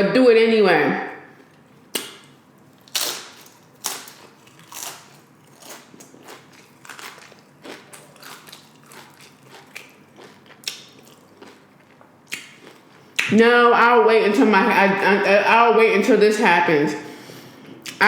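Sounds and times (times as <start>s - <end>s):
chips crunching while chewed: 1.5s - 13.1s.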